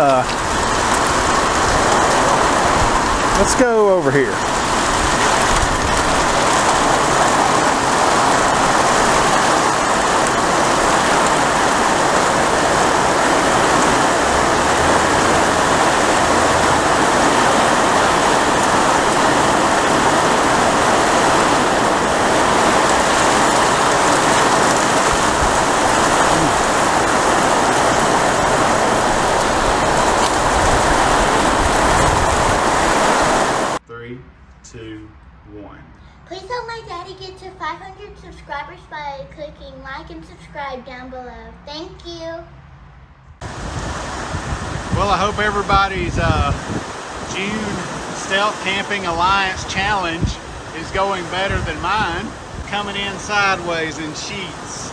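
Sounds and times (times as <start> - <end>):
heavy rain pouring: 0.0 - 33.8, 43.4 - 54.9.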